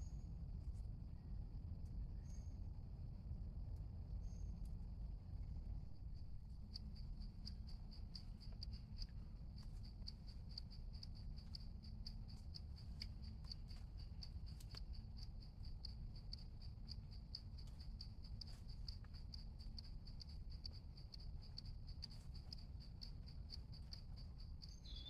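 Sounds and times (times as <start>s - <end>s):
low background rumble: 0.0s - 25.0s
insect chirping: 2.1s - 3.1s, 4.1s - 25.0s
faint clicks and taps: 6.4s - 25.0s.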